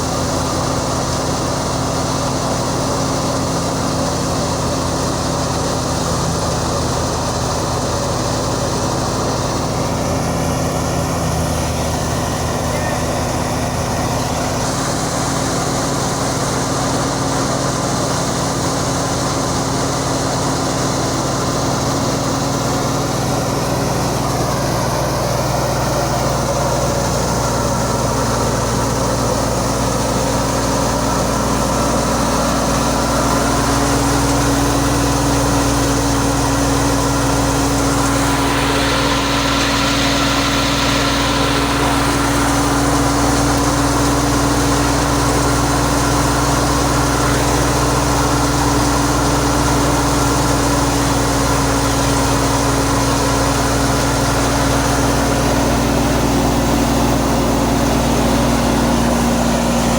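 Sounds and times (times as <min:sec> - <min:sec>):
harvester engine drone: 0:00.0 - 0:59.9.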